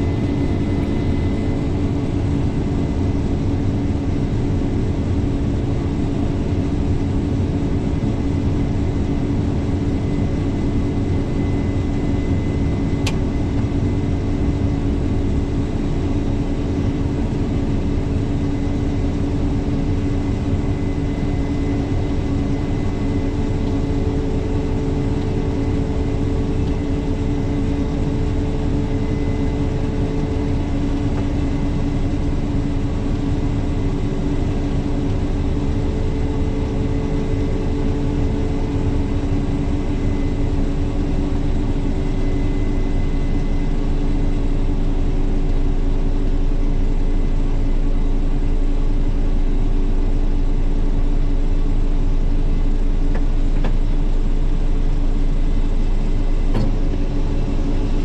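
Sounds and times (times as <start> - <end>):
diesel engine running: 8.0 - 43.1.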